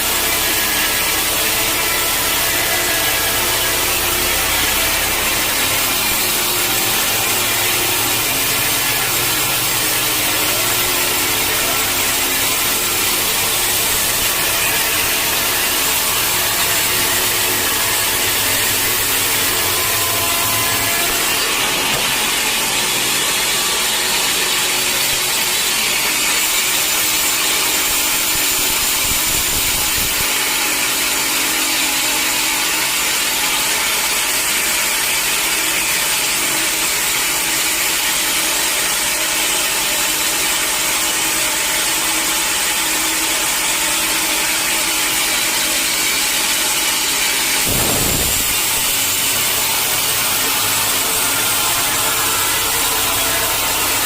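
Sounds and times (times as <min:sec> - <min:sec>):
saw cutting through log: 0:00.0 - 0:54.0
low thud: 0:47.7 - 0:49.0.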